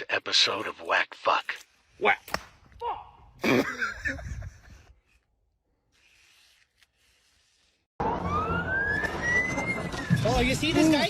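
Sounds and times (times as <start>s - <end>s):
siren wailing: 8.0s - 10.2s.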